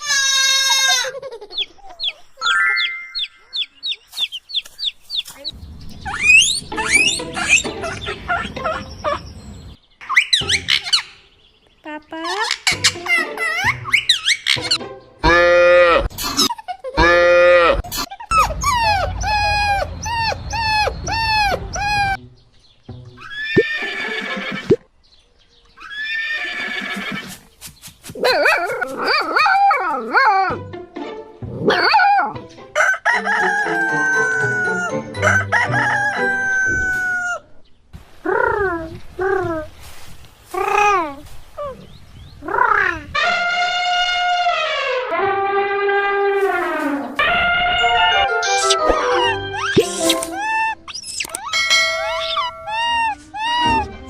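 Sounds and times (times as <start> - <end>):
hen clucking: 0.7 - 9.8
background music: 6.4 - 9.0, 12.0 - 16.1, 21.3 - 24.6, 29.3 - 36.9, 45.1 - 54.0
cartoon animal calls: 12.2 - 22.2, 42.4 - 45.2, 47.2 - 53.9
rooster crowing: 32.8 - 37.5.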